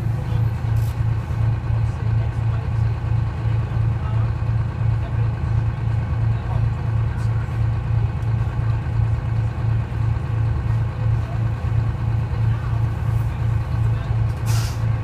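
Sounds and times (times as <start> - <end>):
diesel bus engine throbbing: 0.0 - 15.0.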